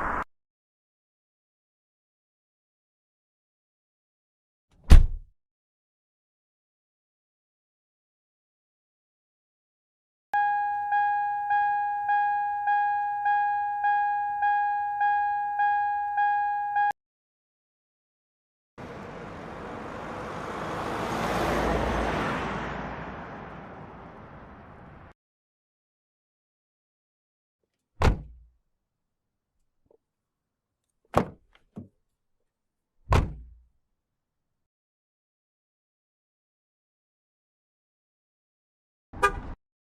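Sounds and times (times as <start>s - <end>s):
car warning chime: 10.4s - 16.9s.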